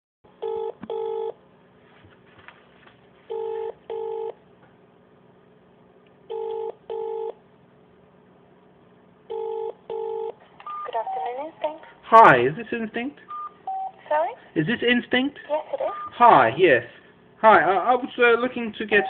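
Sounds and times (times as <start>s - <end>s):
telephone ringback tone: 0.4s - 1.4s, 3.3s - 4.4s, 6.3s - 7.4s, 9.3s - 11.4s, 13.3s - 14.0s.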